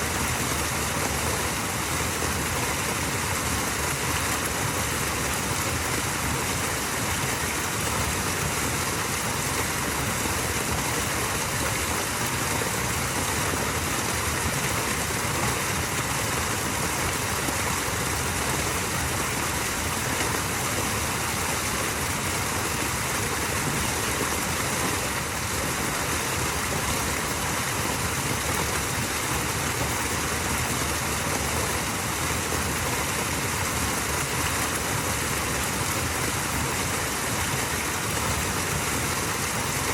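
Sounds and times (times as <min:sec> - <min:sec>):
small waterfall rushing: 0:00.0 - 0:39.9.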